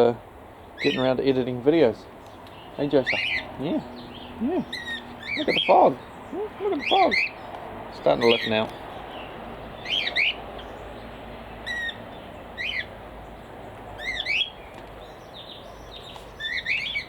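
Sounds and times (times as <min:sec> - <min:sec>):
cockatiels calling: 0:00.8 - 0:01.3, 0:02.5 - 0:10.8, 0:11.6 - 0:12.0, 0:12.6 - 0:12.9, 0:14.0 - 0:14.6, 0:16.0 - 0:17.0.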